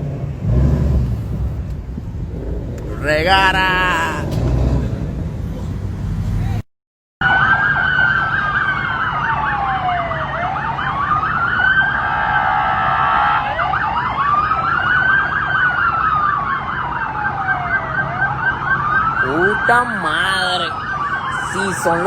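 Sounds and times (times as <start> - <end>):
low engine hum: 0.0 - 6.6
siren wailing: 2.8 - 4.4, 19.0 - 22.0
fast warbling siren yelp: 19.2 - 22.0.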